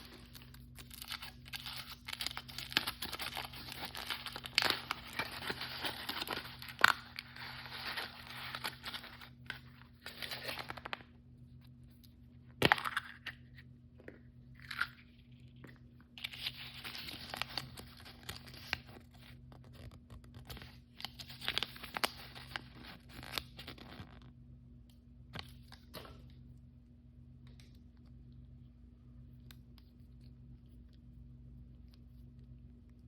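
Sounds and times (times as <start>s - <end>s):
packaging tearing and crinkling: 0.0s - 11.0s, 16.2s - 24.2s.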